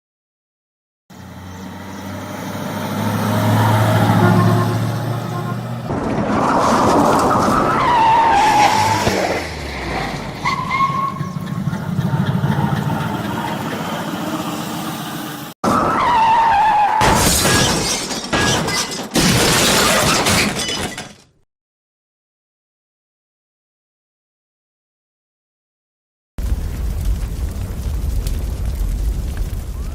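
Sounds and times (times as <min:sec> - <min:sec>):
car engine noise: 0:01.1 - 0:17.0
car crash with shattering: 0:05.9 - 0:10.5, 0:15.7 - 0:21.4
tyre squeal: 0:10.4 - 0:11.4.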